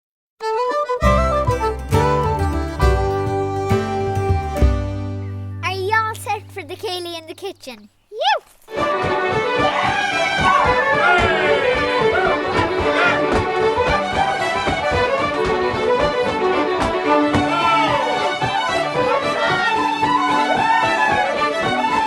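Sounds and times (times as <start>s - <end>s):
fiddle playing dance music: 5.6s - 7.8s, 8.7s - 22.0s.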